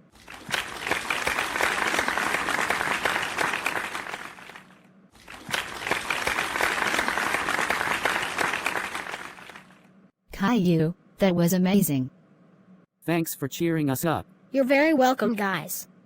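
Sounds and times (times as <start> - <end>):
audience applause: 0.2 - 9.8.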